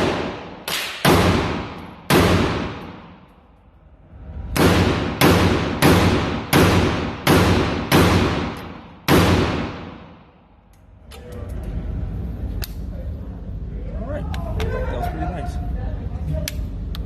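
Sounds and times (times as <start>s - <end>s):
rifle gunshots echoing: 0.0s - 3.2s, 4.6s - 10.3s.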